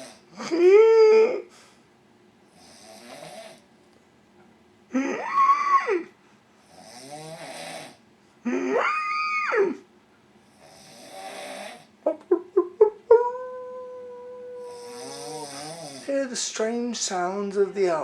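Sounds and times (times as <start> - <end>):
man snoring loudly: 0.0 - 0.2, 2.6 - 3.6, 6.7 - 8.0, 10.6 - 11.9, 14.6 - 16.2
breathy hisses: 14.6 - 16.2.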